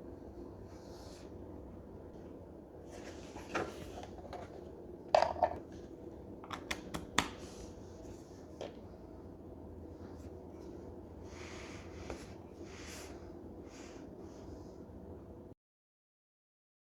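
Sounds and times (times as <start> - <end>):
faint steady hum: 0.0 - 15.6.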